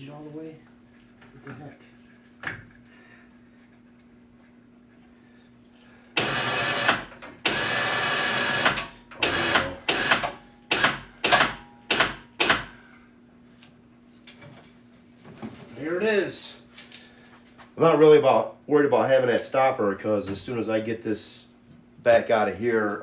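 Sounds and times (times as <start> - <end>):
electric winch motor whining: 6.2 - 11.5.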